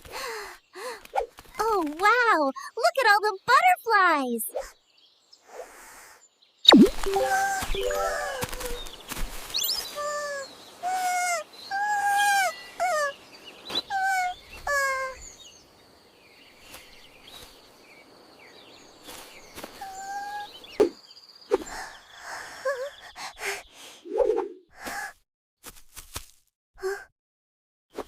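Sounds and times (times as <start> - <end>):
birds chirping and trilling: 4.5 - 24.8.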